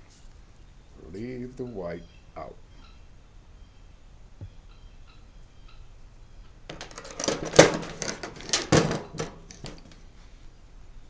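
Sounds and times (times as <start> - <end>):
metal tools clicking and clattering: 6.7 - 10.0.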